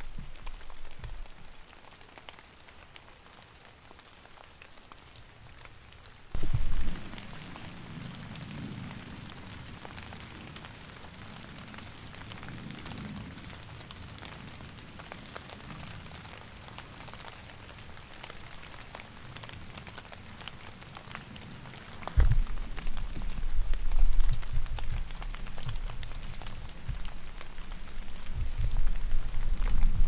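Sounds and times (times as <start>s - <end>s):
raindrops ticking: 0.0s - 4.1s, 6.3s - 30.0s
low rumble: 6.4s - 7.4s, 22.1s - 30.0s.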